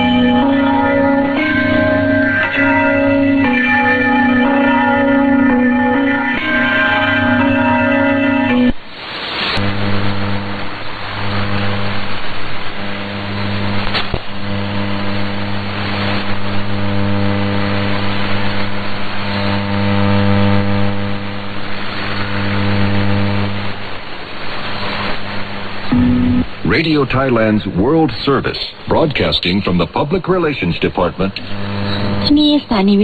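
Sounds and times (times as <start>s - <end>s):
low buzzing hum: 0.0s - 33.0s
radio receiver hiss: 8.7s - 33.0s
static clicks: 9.4s - 26.6s, 31.2s - 32.7s.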